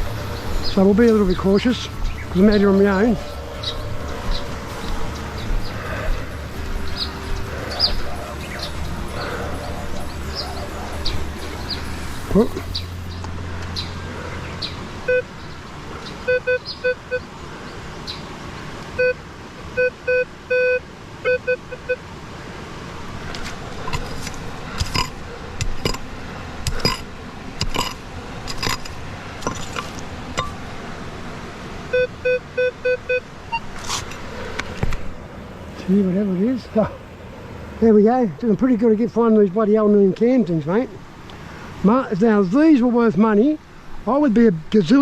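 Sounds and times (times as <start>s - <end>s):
metal detector beeping: 15.1s - 15.3s, 16.2s - 17.2s, 19.0s - 19.2s, 19.8s - 22.0s, 31.9s - 33.7s
pick striking ground: 23.4s - 30.6s.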